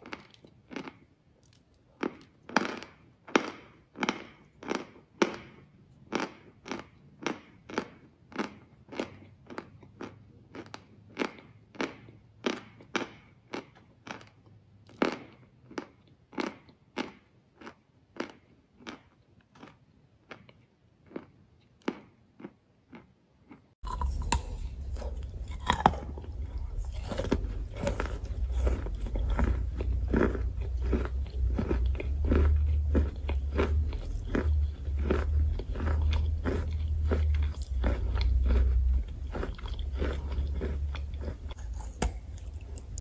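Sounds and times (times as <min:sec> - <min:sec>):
chalk crunching: 0:23.8 - 0:43.0
low hum: 0:23.8 - 0:43.0.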